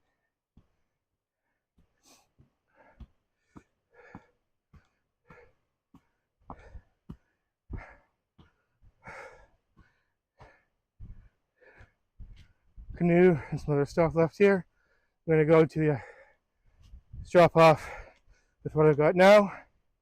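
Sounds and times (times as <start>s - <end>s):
person breathing hard: 1.4s - 13.7s, 14.6s - 15.2s, 15.9s - 17.2s, 17.8s - 18.6s
soft thuds: 12.2s - 13.1s.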